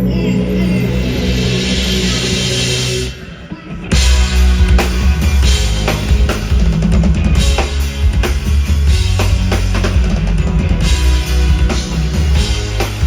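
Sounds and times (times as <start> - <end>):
band music with drum beat: 3.8 - 13.0.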